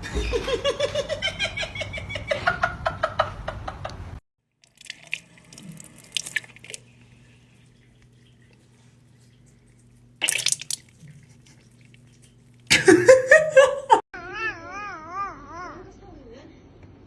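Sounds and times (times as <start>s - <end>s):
water dripping: 4.5s - 12.9s.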